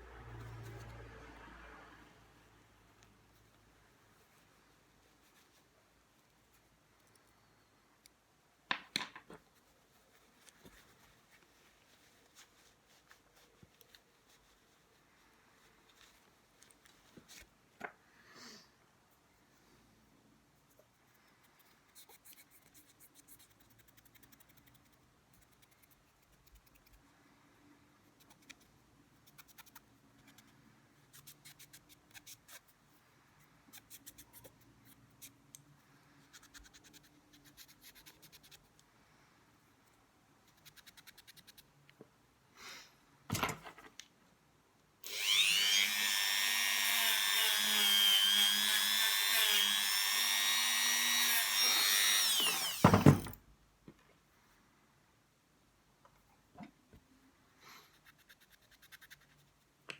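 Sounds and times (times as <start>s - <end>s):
rotary power tool whining: 45.0s - 53.4s.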